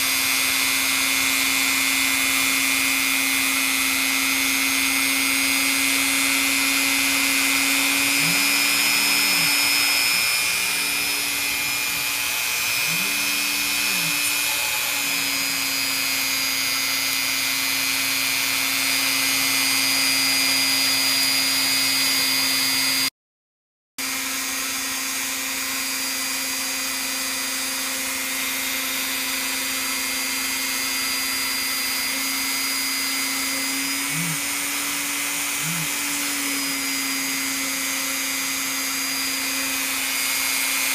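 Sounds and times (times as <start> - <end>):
machine whirring hum: 0.0 - 22.0, 31.6 - 40.9.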